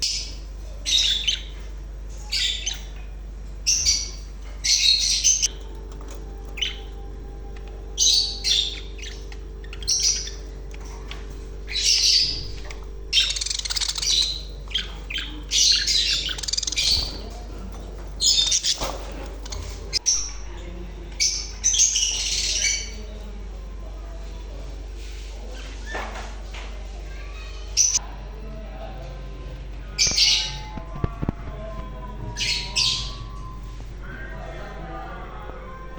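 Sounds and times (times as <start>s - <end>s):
parrots squawking and chirping: 0.0s - 3.0s, 3.6s - 23.1s, 29.9s - 35.9s
low hum: 0.0s - 21.1s, 28.0s - 35.9s.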